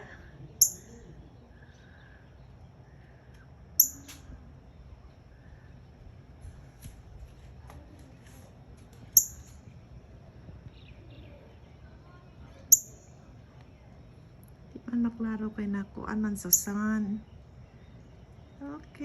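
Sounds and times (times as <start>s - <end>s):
high-pitched bird chirps: 0.6s - 1.0s, 3.8s - 4.2s, 9.2s - 9.5s, 12.7s - 13.2s, 16.4s - 17.0s.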